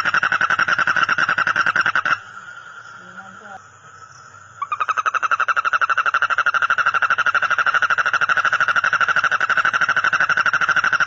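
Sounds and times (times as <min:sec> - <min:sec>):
frog calling in pulsed trill: 0:04.6 - 0:11.0.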